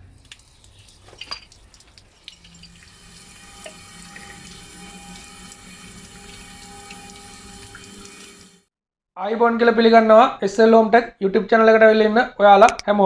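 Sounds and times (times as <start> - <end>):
water running from a tap: 0.0 - 8.7.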